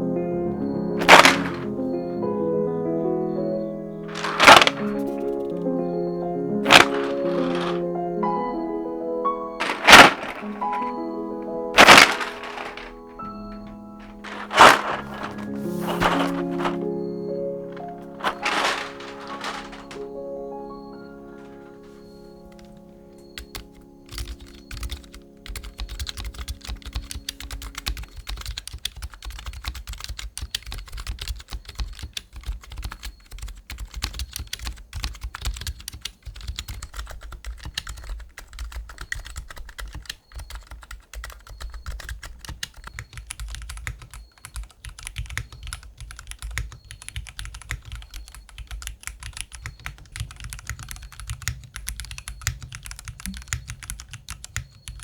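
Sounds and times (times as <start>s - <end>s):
music: 0.0s - 28.3s
fast typing on mechanical keyboard: 6.7s - 7.8s, 9.6s - 11.1s, 14.1s - 16.8s, 23.4s - 55.0s.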